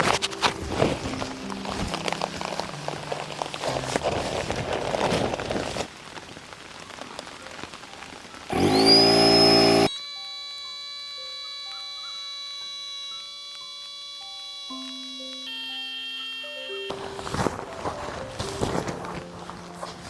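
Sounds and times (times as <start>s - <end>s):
rain falling: 1.3s - 8.5s
high tonal whistle: 8.5s - 17.5s.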